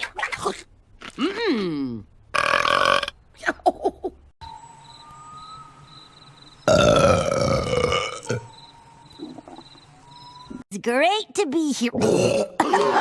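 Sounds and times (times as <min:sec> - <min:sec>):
cartoon character burping: 0:06.7 - 0:08.4, 0:11.9 - 0:13.0.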